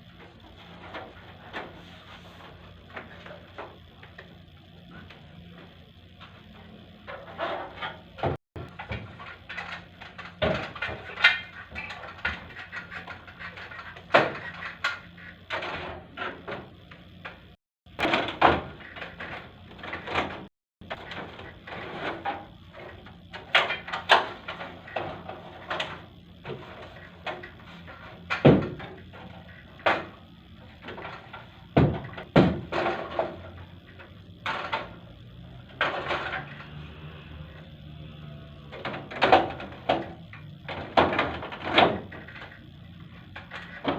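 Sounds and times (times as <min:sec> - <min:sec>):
knocks clunks and rattles: 0:07.1 - 0:33.6.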